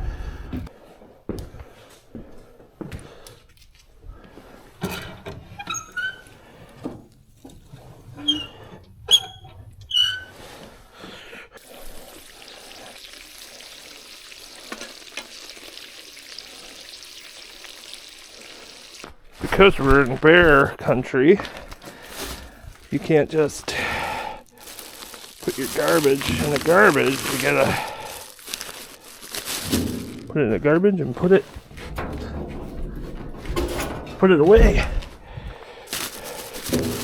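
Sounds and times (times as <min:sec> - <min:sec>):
food sizzling in fryer: 0:11.6 - 0:19.2.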